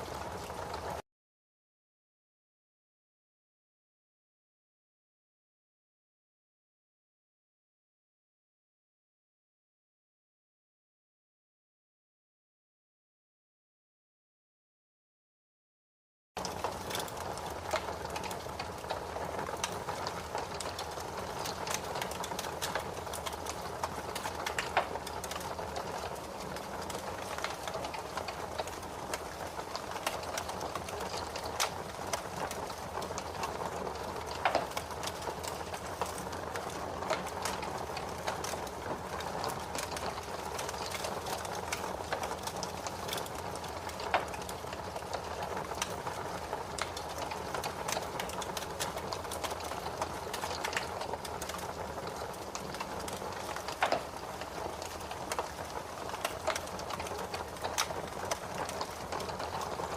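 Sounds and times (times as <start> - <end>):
fire crackling and popping: 0.0 - 1.0, 16.4 - 59.9.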